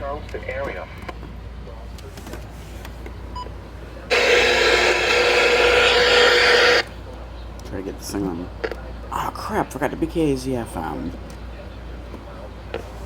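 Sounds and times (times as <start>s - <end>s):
radio static hiss with tone: 4.1s - 6.9s.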